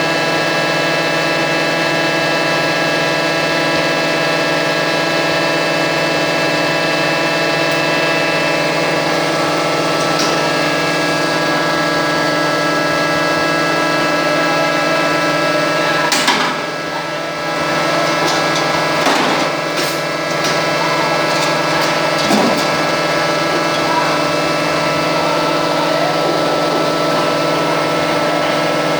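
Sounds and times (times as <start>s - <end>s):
veneer lathe humming: 2.5s - 28.9s
sharp knocks and clatters: 16.1s - 16.7s, 18.1s - 23.8s.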